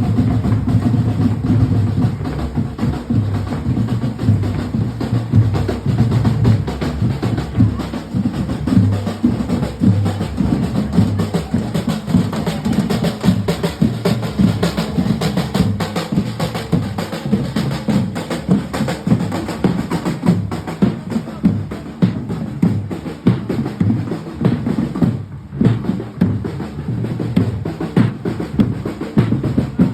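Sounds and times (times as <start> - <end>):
drum and percussion rhythm: 0.0 - 29.9.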